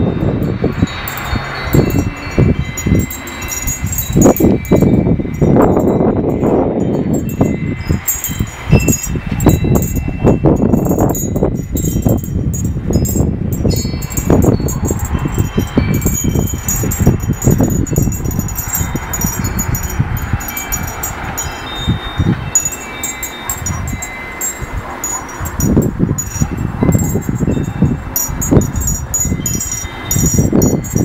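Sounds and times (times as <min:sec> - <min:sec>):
wind chimes ringing: 0:00.0 - 0:31.0.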